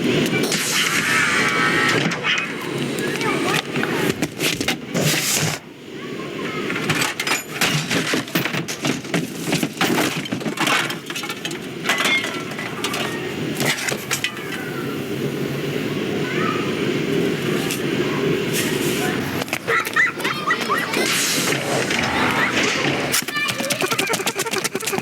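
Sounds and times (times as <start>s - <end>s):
low murmur: 10.6s - 25.0s.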